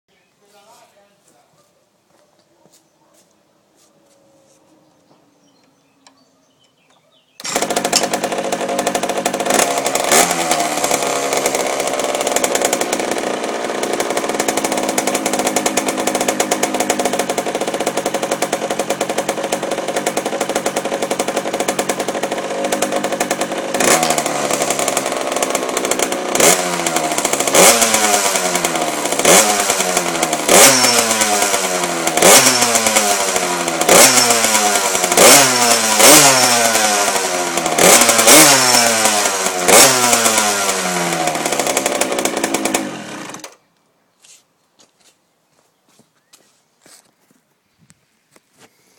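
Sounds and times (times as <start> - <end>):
small two-stroke engine idling and revving: 7.4 - 43.7.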